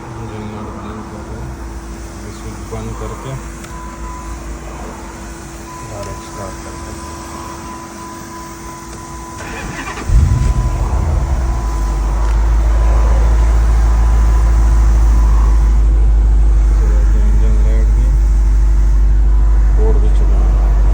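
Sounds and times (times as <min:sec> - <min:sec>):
engine cranking: 0:09.4 - 0:17.0
pickup engine revving and idling: 0:09.4 - 0:20.9.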